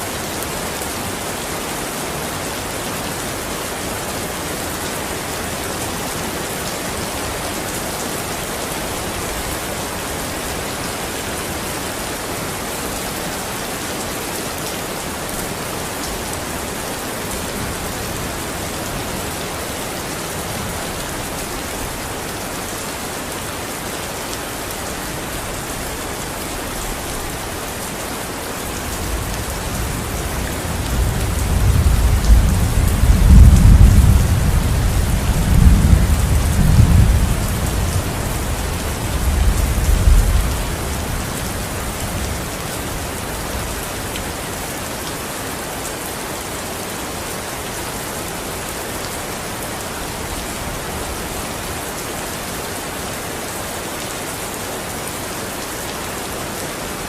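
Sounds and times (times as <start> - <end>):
rain pattering: 0.0 - 57.0
low rumble of thunder: 29.0 - 42.4.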